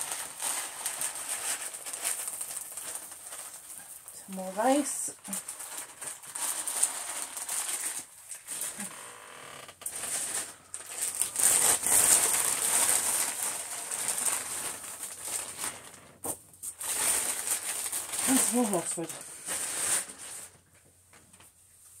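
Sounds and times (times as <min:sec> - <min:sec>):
rice grains pattering on floor: 0:09.7 - 0:18.9.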